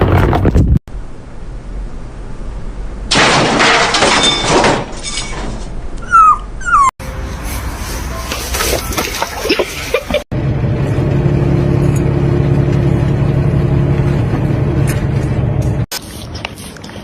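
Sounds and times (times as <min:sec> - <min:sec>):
low machine hum: 0:09.4 - 0:15.9.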